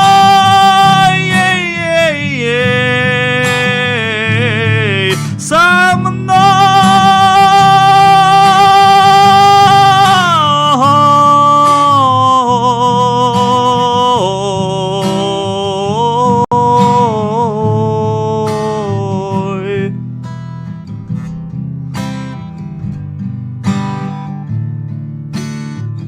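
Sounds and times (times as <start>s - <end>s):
man singing a held note: 0.0s - 20.0s
acoustic guitar strumming: 0.0s - 26.0s.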